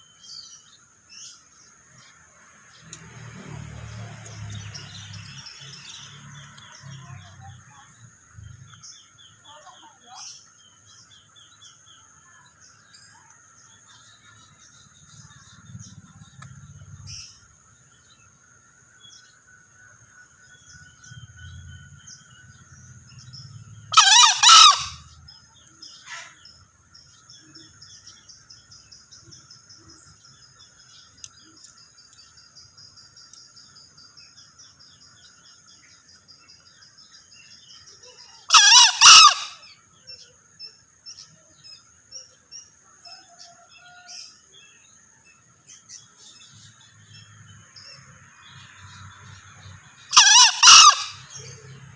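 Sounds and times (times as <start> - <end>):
junglefowl crowing: 23.9 - 25.1, 38.5 - 39.7, 50.1 - 51.6.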